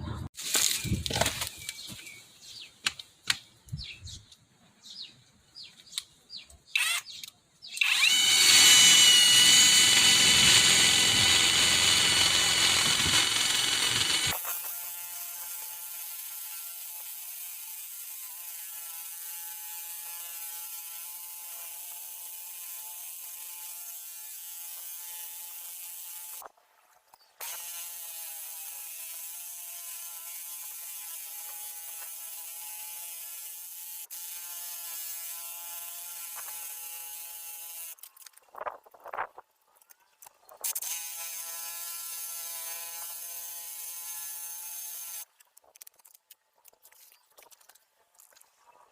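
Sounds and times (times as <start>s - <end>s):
drill motor whine: 7.8s - 14.5s.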